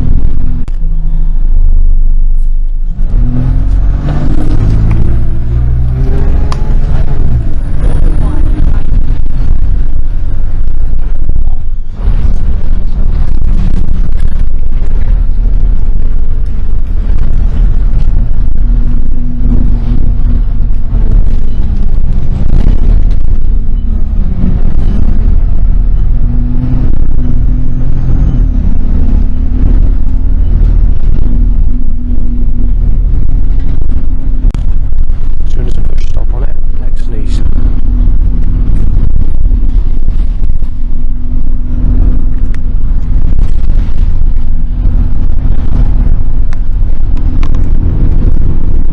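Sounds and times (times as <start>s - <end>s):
faint engine tones: 0.0s - 48.9s
motor traffic rumble: 0.0s - 48.9s.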